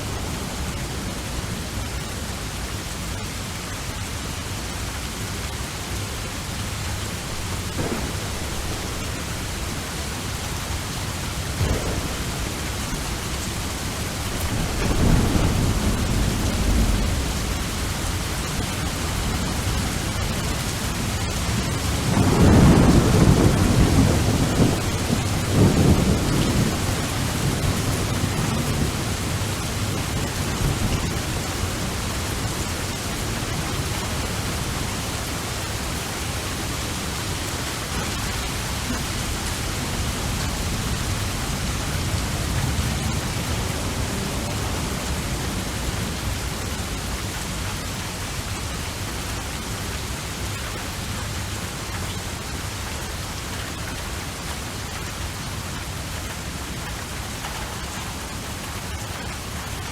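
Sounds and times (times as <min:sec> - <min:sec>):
thunder rumbling: 0:00.0 - 0:02.6, 0:06.7 - 0:49.0
heavy rain: 0:00.0 - 0:59.9.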